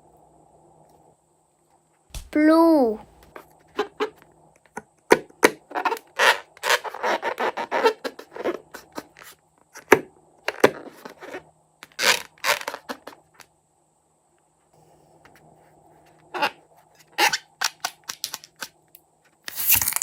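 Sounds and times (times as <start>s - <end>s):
slime scrapes clicks and crackles: 19.5s - 20.0s.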